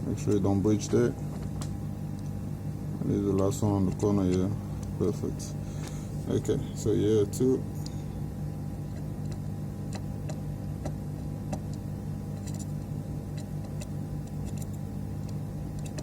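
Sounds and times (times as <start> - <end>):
low electrical hum: 0.0 - 16.0
light ticks of soldering: 1.5 - 2.4, 8.8 - 11.9, 12.5 - 16.0.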